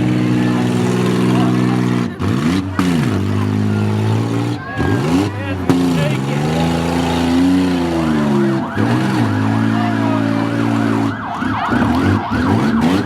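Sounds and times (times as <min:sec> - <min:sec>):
engines running: 0:00.0 - 0:13.0
emergency siren yelping: 0:07.7 - 0:13.0.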